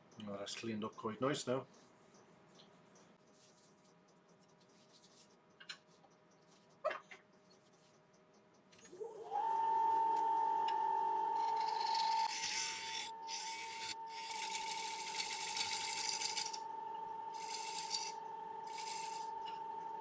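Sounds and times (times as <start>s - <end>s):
lathe motor whine: 8.9s - 20.0s
scraper cutting wood hissing: 11.6s - 16.6s, 17.4s - 19.3s.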